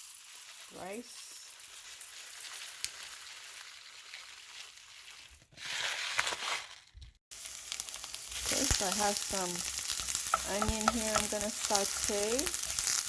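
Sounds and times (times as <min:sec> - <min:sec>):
food sizzling in a hot pan: 0:07.3 - 0:13.0.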